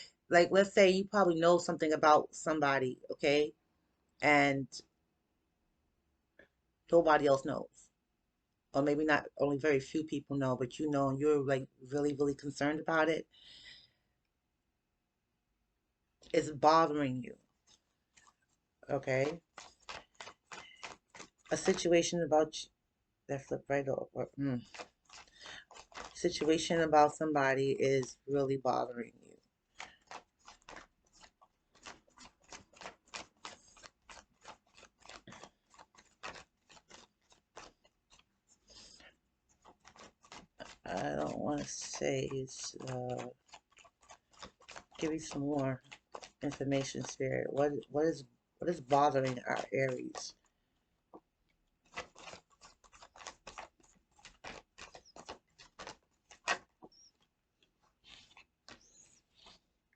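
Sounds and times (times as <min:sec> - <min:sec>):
cards being shuffled: 0:17.6 - 0:22.6, 0:24.3 - 0:59.9.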